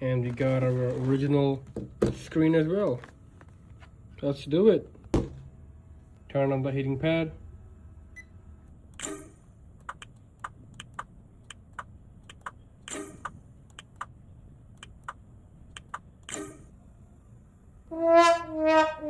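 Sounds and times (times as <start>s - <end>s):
brass-like horn tone: 17.9s - 19.0s.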